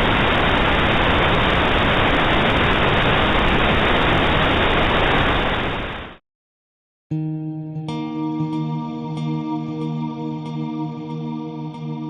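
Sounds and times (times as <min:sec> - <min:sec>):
radio static hiss: 0:00.0 - 0:06.2.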